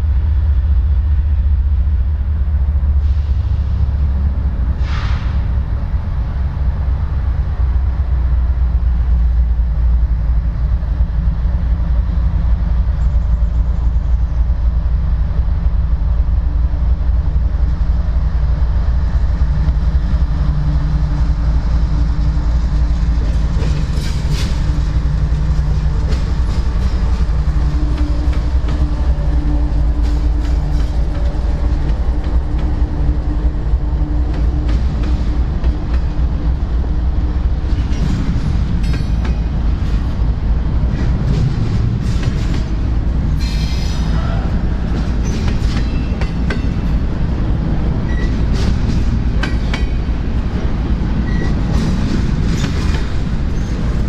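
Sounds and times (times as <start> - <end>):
freight train rumble: 0.0 - 54.0
wheels clattering over rail: 22.9 - 32.9, 48.1 - 54.0.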